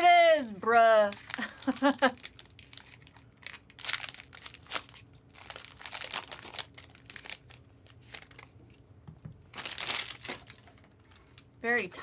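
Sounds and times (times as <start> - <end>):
foil wrappers crinkling and tearing: 1.0 - 8.6, 9.5 - 11.5.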